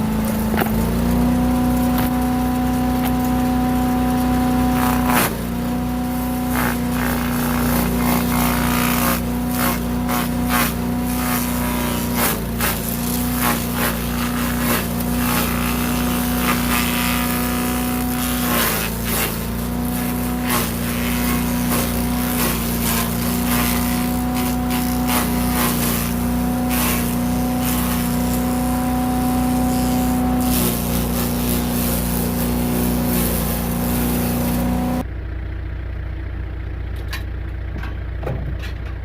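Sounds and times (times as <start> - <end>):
branches cracking in chipper: 0.0 - 35.0
wood chipper engine running: 0.0 - 39.0.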